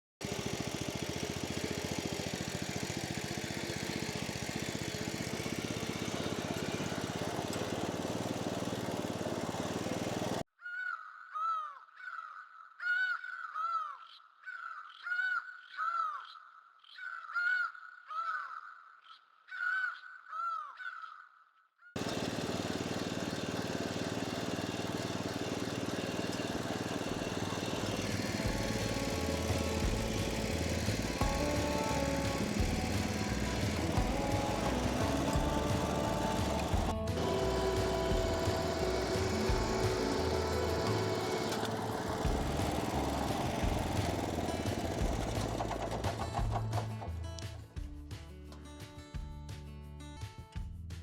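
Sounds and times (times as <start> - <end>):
small engine running: 0.2 - 10.5, 22.0 - 47.6.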